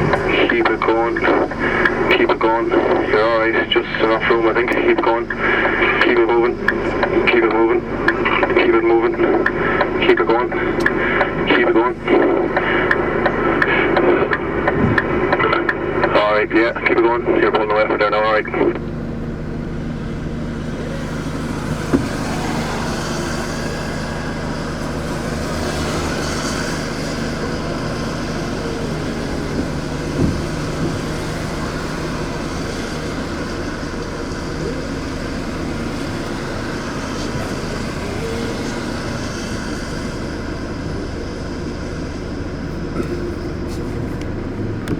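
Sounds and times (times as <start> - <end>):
truck diesel engine under load: 0.0 - 44.9.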